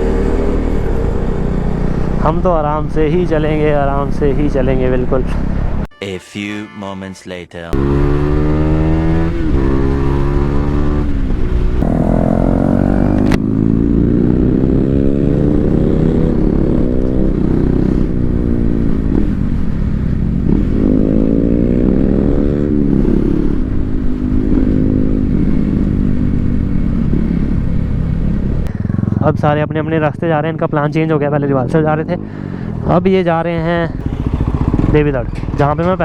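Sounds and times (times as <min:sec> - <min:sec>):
motorcycle engine shifting gears: 0:00.0 - 0:04.4, 0:07.8 - 0:29.4, 0:34.0 - 0:36.0.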